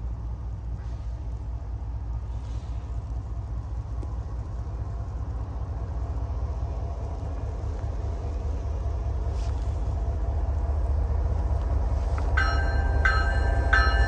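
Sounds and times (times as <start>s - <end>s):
diesel locomotives rumbling: 0.0s - 14.0s.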